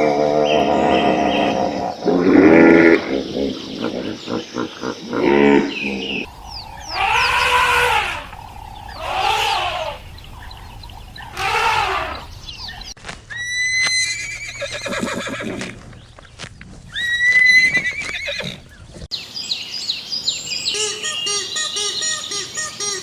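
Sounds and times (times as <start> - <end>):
birds chirping: 0.4 - 13.0, 18.7 - 23.0
animal high-pitched quavering calls: 2.3 - 12.9.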